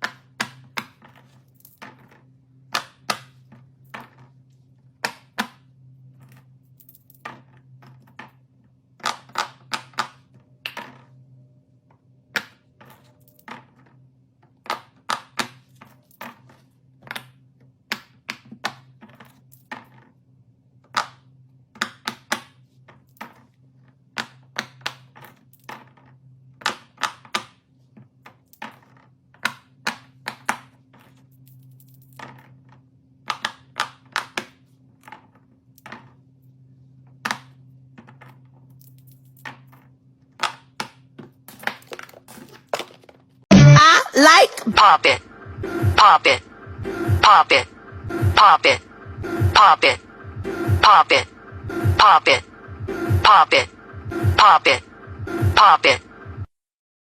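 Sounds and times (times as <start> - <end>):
faint steady hum: 43.8 - 56.5.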